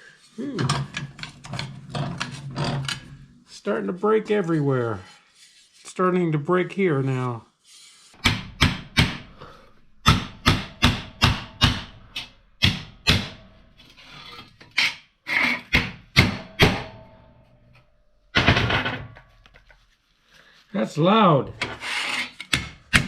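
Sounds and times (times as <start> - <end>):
hammer striking aluminum: 8.2 - 9.4, 10.0 - 13.7, 15.8 - 17.3
scraping: 13.6 - 15.7, 21.5 - 22.6.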